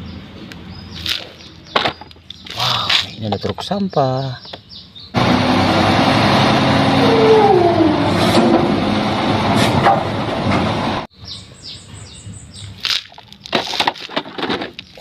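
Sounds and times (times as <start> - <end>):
truck engine with falling whine: 5.2 - 11.1.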